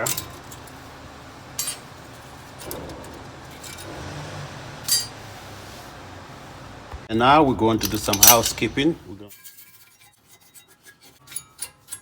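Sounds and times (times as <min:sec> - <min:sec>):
metal clips clinking: 0:00.0 - 0:00.8, 0:01.6 - 0:03.9, 0:04.8 - 0:05.2, 0:07.7 - 0:08.8.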